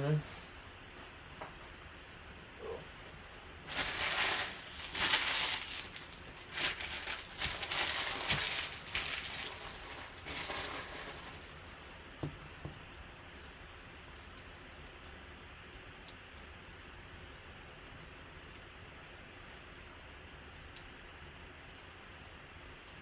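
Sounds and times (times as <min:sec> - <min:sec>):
packaging crinkling: 0:03.6 - 0:11.8.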